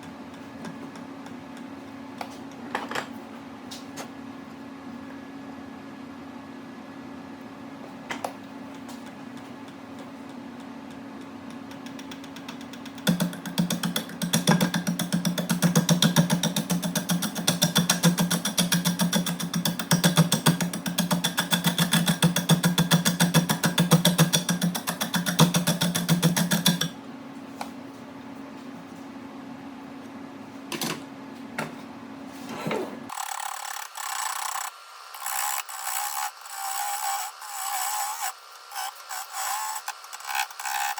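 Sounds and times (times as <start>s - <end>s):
turning tool chattering on wood: 11.7s - 26.9s
tool scraping wood: 33.1s - 40.9s
wood lathe motor hum: 33.1s - 40.9s.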